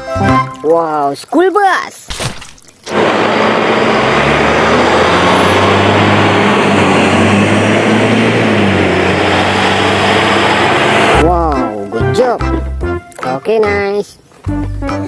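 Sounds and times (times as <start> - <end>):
loud even hiss: 2.8 - 11.3
bus engine running: 2.9 - 11.8.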